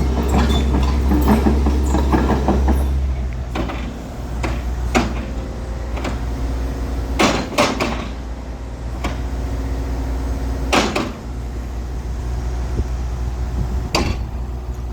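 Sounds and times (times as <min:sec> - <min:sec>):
excavator diesel engine running: 0:00.0 - 0:14.9
sharp clunks: 0:10.7 - 0:11.2, 0:13.9 - 0:14.4.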